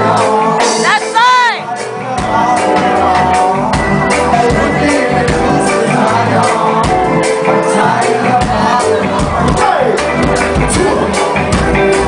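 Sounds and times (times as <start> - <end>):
live band playing: 0.0 - 12.0
steady drum beat: 0.0 - 12.0.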